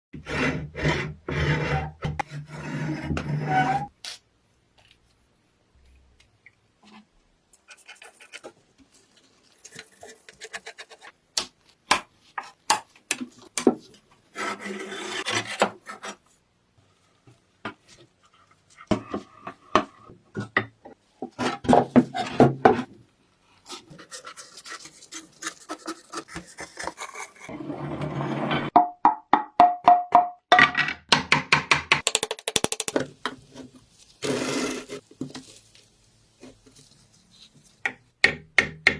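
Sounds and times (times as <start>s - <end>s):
clicks and knocks: 32.0s - 33.1s.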